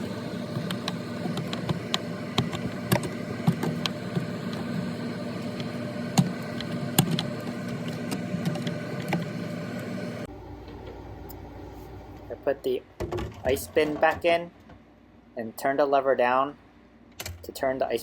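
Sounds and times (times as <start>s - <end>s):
refrigerator humming: 0.0s - 18.0s.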